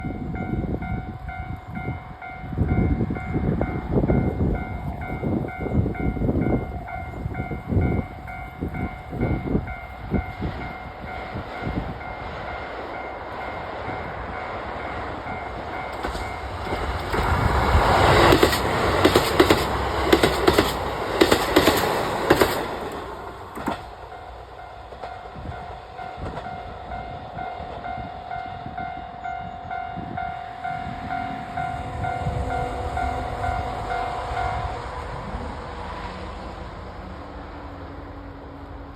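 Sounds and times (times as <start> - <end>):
diesel train passing: 0.0 - 38.9
train wheels clattering: 15.6 - 27.1.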